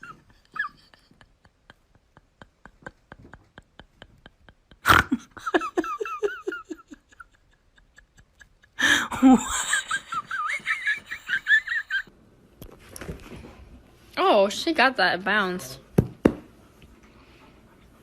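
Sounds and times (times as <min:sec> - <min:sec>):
person laughing hard: 0:00.0 - 0:12.1.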